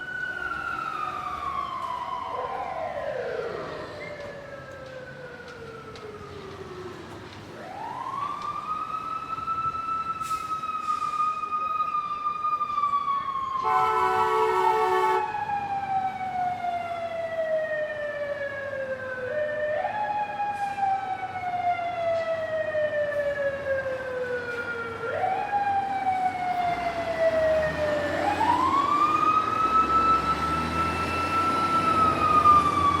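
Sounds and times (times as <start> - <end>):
fire truck siren wailing: 0.0 - 33.0
truck horn blasting: 13.6 - 15.3.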